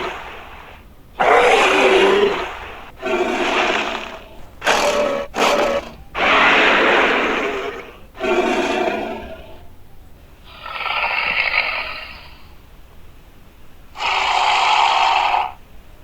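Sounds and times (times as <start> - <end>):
monster hissy roars: 0.0 - 9.6, 10.5 - 12.4, 14.0 - 15.6.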